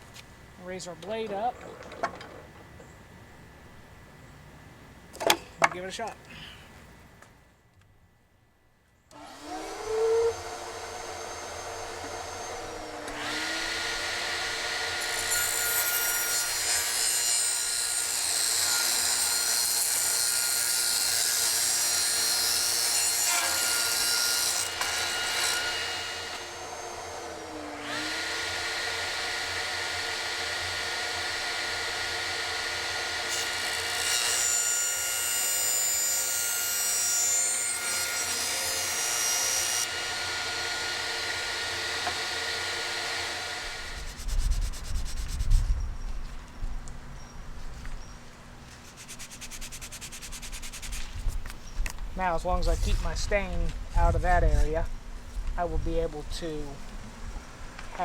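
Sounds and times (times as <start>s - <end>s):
table saw cutting wood: 9.1s - 44.8s.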